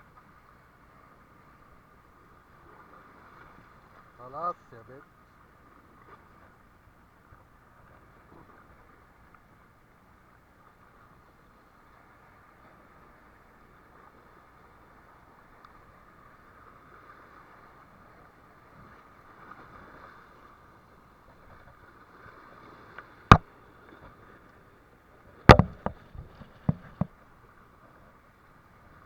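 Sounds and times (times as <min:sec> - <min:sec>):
sharp knocks: 0:25.5 - 0:27.1.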